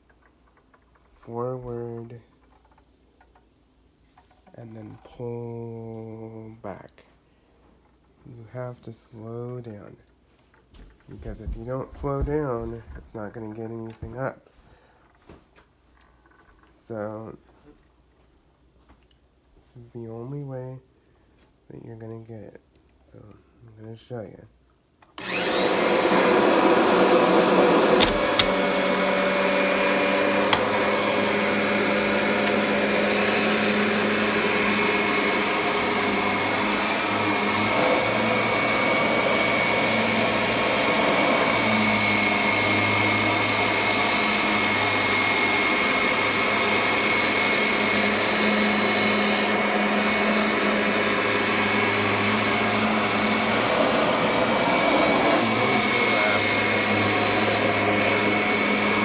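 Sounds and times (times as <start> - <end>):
vacuum cleaner on carpet: 11.1 - 13.3, 25.2 - 59.0.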